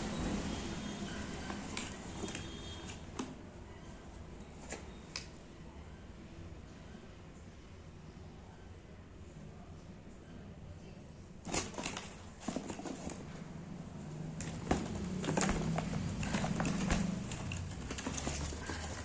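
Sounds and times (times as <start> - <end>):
packaging crinkling and clicks: 14.4 - 19.0.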